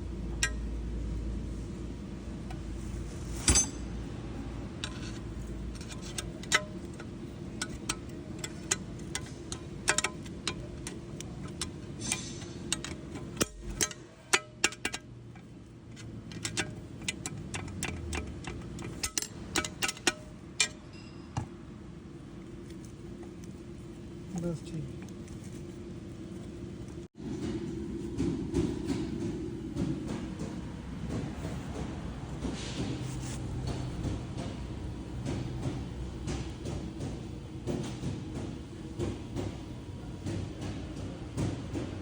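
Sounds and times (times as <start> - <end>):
steady low hum: 0.0 - 42.0
metal tools clinking: 3.2 - 4.0.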